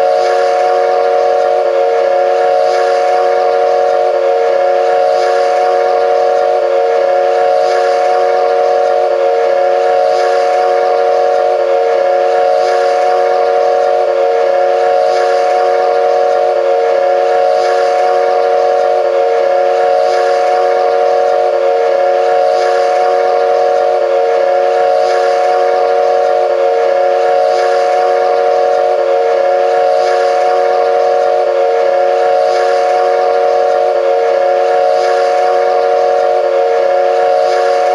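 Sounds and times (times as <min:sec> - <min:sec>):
faint pulse: 0:00.0 - 0:37.9.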